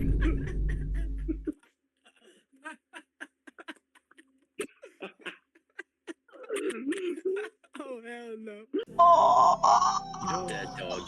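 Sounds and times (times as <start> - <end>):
stifled giggling: 0.0 - 8.0.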